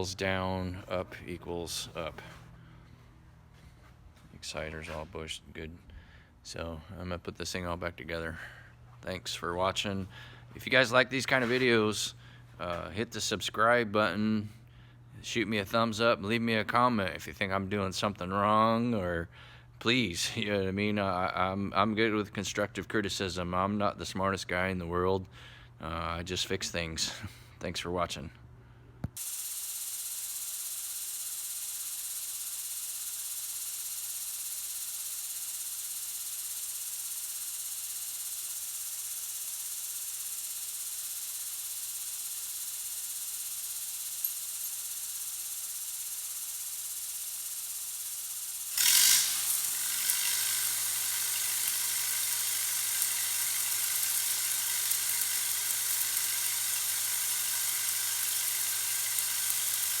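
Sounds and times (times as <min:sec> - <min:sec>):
steady hiss: 0:29.2 - 1:00.0
welding arc crackling sizzle: 0:29.2 - 1:00.0.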